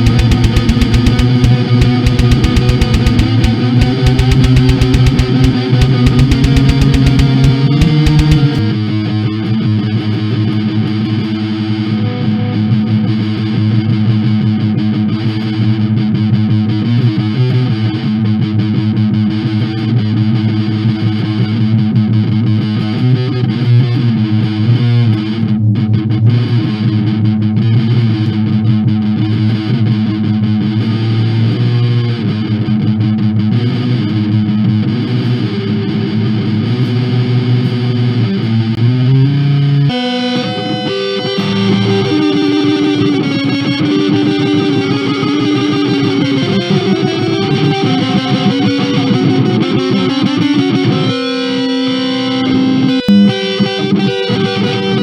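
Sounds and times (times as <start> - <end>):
distorted electric guitar music: 0.0 - 10.1, 33.6 - 55.0.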